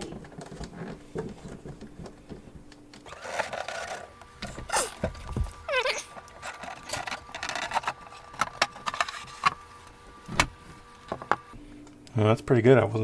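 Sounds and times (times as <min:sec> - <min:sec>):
clock parts clicking and scraping: 0:03.1 - 0:11.6.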